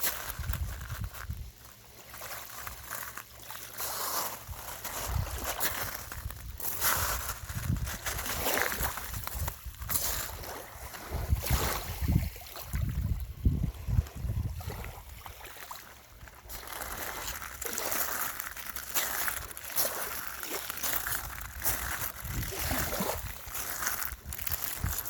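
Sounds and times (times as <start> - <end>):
small waves sloshing on shore: 0.0 - 25.0
wind buffeting microphone: 0.1 - 1.4, 4.5 - 15.4, 21.3 - 25.0.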